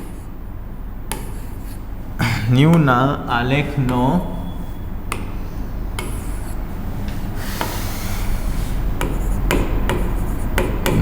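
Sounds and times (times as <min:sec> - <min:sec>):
writing scraping: 0:00.0 - 0:00.3, 0:01.1 - 0:02.0, 0:04.5 - 0:11.0
low electrical hum: 0:00.0 - 0:11.0.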